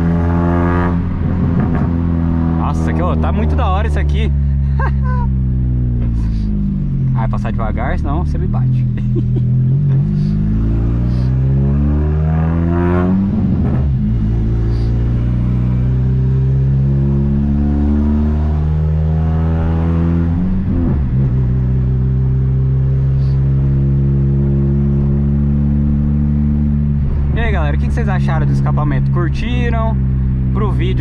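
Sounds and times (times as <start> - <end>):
car engine accelerating through gears: 0.0 - 31.0.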